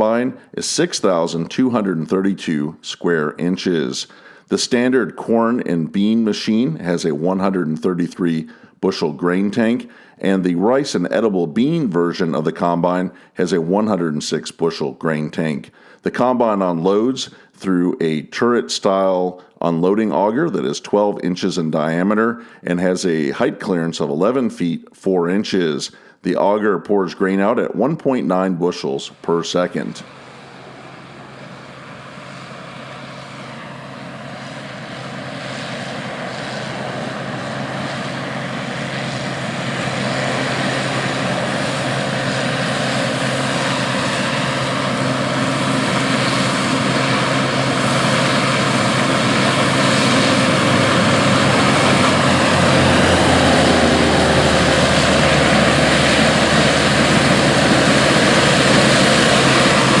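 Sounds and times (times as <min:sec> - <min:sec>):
combine harvester running: 0:29.1 - 1:00.0.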